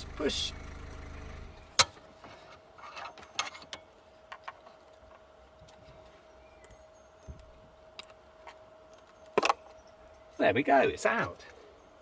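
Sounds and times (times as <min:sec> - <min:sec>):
faint steady hum: 0:00.0 - 0:02.0.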